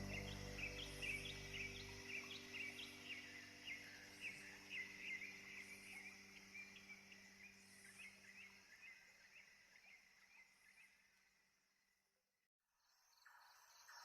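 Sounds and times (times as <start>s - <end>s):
faint steady hiss: 0.0s - 10.5s.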